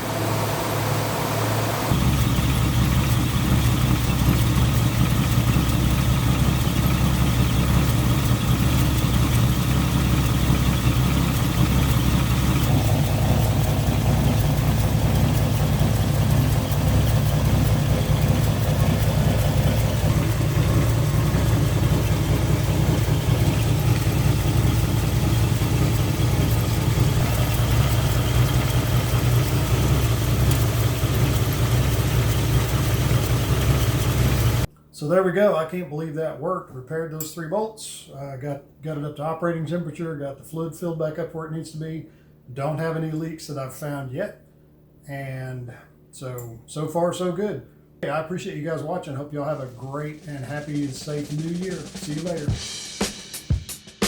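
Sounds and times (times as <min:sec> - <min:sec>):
engine idling: 0:00.0 - 0:34.7, 0:49.6 - 0:53.0.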